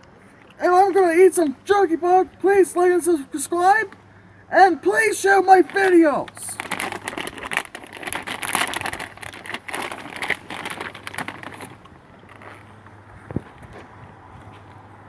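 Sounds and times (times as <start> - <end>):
plastic bag crinkling: 4.9 - 12.8.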